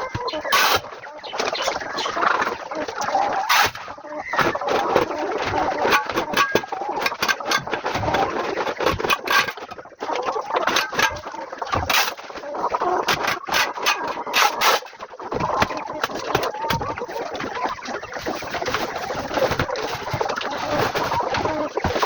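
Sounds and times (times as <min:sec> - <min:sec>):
chickens clucking: 0:00.0 - 0:22.0
shovel scraping litter: 0:00.2 - 0:02.4, 0:03.4 - 0:08.4, 0:13.1 - 0:14.9.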